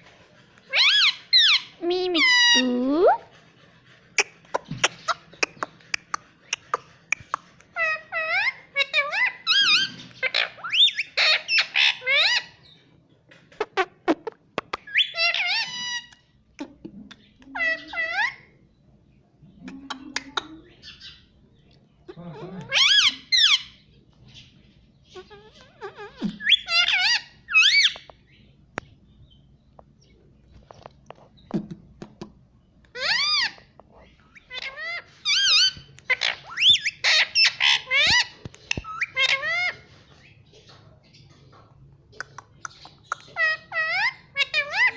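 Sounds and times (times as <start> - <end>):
parrot squawking and calling: 0.6 - 12.6, 13.5 - 16.8, 17.5 - 18.6, 22.0 - 23.8, 25.0 - 28.1, 32.9 - 40.3, 42.2 - 44.9.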